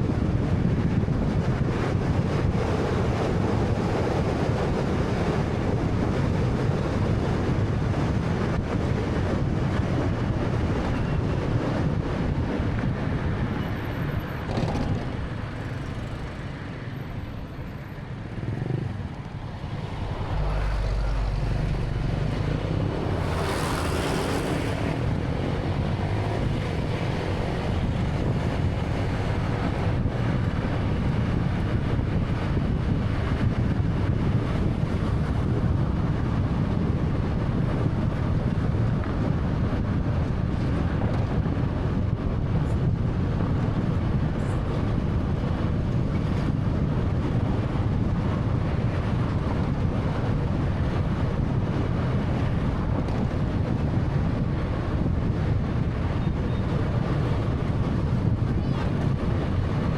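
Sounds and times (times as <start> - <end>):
tyre and wind rumble: 0.0 - 59.9.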